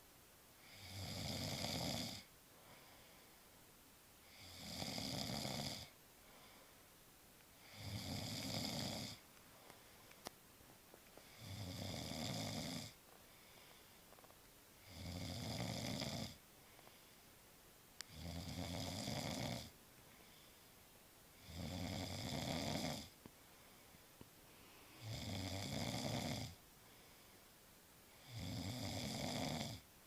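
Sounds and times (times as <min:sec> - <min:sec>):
man snoring: 0:00.6 - 0:02.3, 0:04.2 - 0:06.0, 0:07.6 - 0:09.2, 0:11.2 - 0:13.0, 0:14.8 - 0:16.4, 0:18.1 - 0:19.7, 0:21.4 - 0:23.2, 0:25.0 - 0:26.6, 0:28.1 - 0:29.8.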